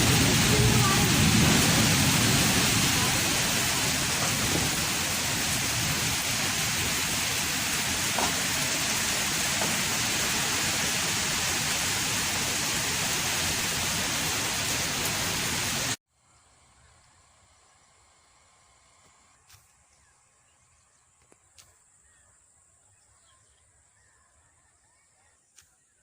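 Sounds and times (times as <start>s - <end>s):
heavy rain pouring: 0.0s - 16.0s.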